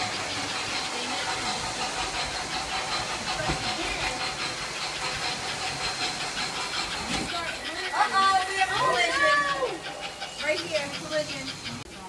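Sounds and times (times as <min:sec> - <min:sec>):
model train motor hum: 0:00.0 - 0:12.0
train wheels clicking on rails: 0:00.0 - 0:12.0.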